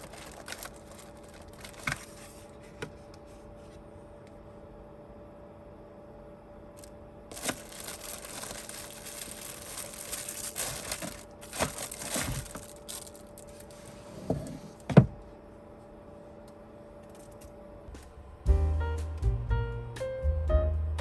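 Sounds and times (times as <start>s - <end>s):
crinkling handling noise: 0.0s - 4.3s, 6.8s - 15.3s
faint steady hum: 0.0s - 21.0s.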